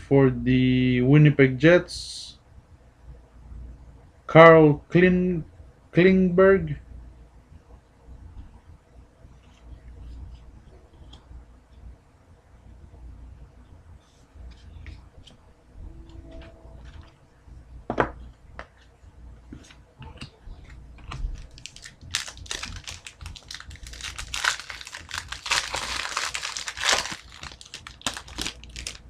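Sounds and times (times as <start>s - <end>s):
foil wrapper crinkling: 21.1s - 29.0s.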